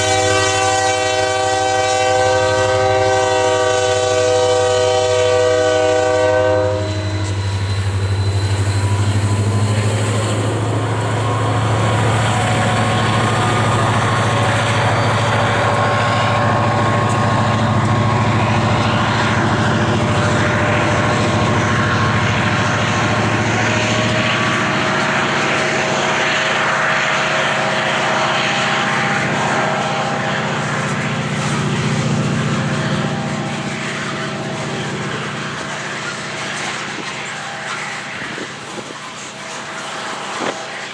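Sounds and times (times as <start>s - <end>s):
locomotive air horn: 0.0s - 7.6s, 10.7s - 34.8s, 39.3s - 40.9s
diesel locomotive engine droning: 0.0s - 40.9s
rail and wheel noise: 0.0s - 40.9s.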